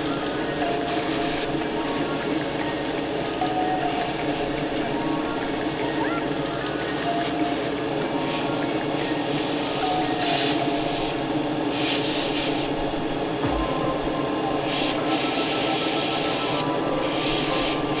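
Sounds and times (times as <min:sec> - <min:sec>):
airbrush spraying hiss: 0:09.1 - 0:12.7, 0:13.4 - 0:18.0
steady hum: 0:13.1 - 0:18.0.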